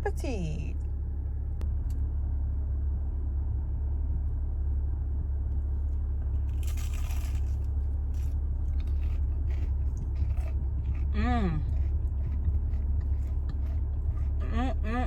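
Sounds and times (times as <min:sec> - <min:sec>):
low car hum: 0:00.0 - 0:15.0
crunchy chewing: 0:06.2 - 0:14.9
crunchy bite: 0:06.4 - 0:14.4.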